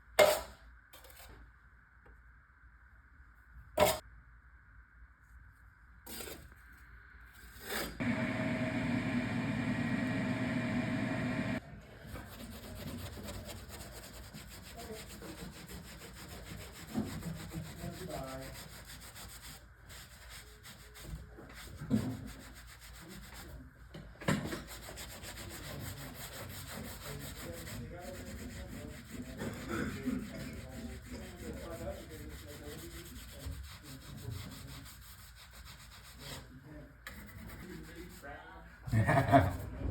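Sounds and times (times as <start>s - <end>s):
hand tool scraping drywall: 7.4s - 8.0s, 12.2s - 23.4s, 24.4s - 36.5s.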